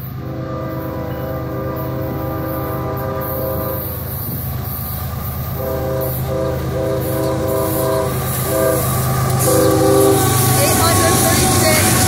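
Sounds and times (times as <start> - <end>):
locomotive air horn blasts: 0.0 - 4.4, 5.6 - 12.0
train rumbling: 0.0 - 12.0.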